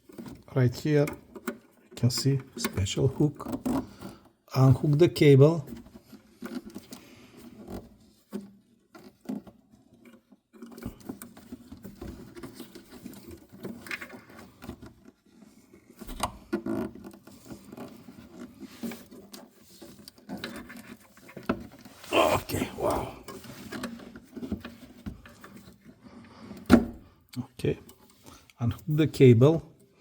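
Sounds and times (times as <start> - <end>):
hands scraping and rustling parts: 5.7 - 27.0.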